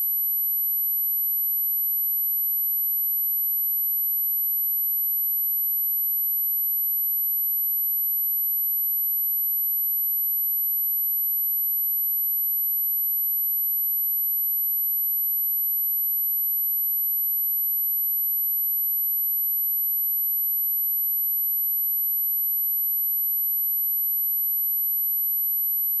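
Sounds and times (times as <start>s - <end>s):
high-pitched sine-wave test tone: 19.0s - 26.0s.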